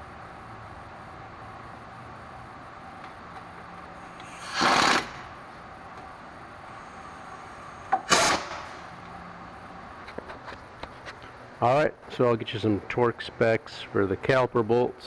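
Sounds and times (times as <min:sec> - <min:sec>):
impact wrench bursts: 0:04.2 - 0:05.4, 0:07.8 - 0:09.0.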